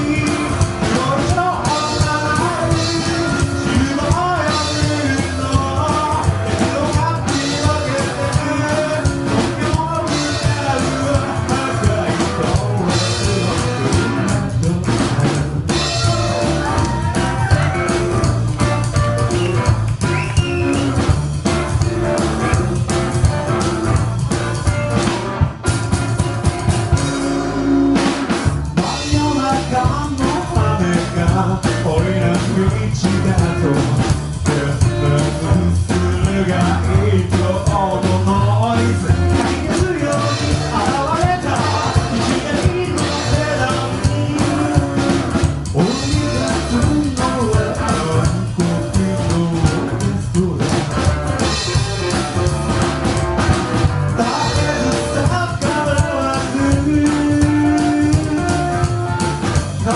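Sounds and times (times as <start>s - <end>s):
person singing: 0.0s - 20.7s, 28.8s - 50.9s, 54.2s - 59.9s
rockabilly band playing: 0.0s - 59.9s.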